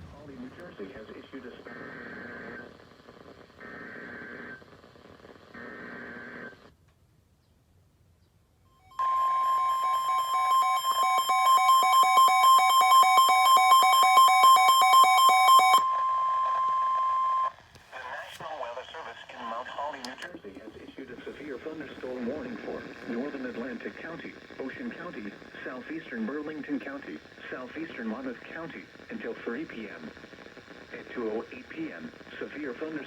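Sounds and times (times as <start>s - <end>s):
rapid electronic beeping alarm: 8.8s - 17.5s
weather radio warning tone: 9.0s - 28.5s.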